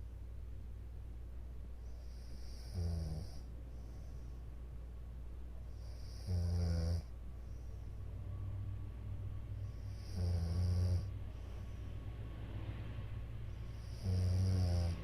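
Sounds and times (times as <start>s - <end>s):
woman snoring: 2.1s - 3.4s, 5.8s - 7.1s, 9.8s - 11.1s, 13.8s - 15.0s.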